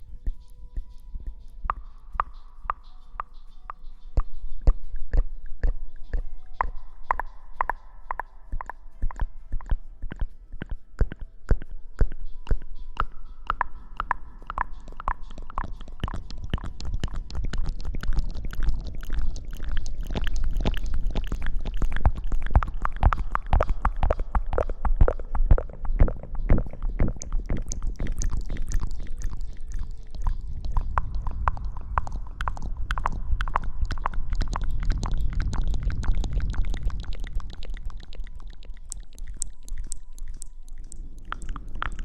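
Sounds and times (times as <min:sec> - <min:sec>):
crackling and scratching rustles: 0:00.0 - 0:42.0
faint steady tones: 0:00.0 - 0:42.0
low rumble: 0:15.3 - 0:42.0.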